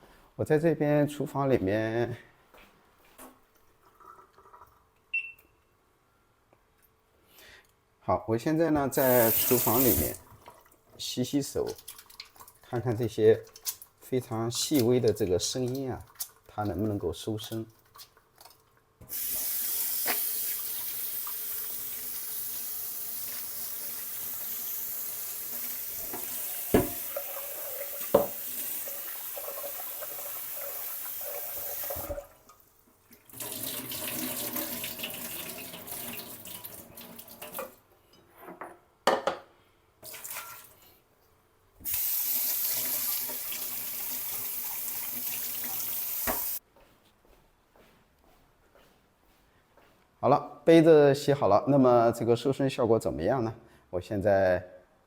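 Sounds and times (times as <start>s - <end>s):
tap running into sink: 25.6s - 28.8s, 31.5s - 32.3s, 45.3s - 46.6s
cup knocking: 26.8s - 27.0s, 28.1s - 28.4s.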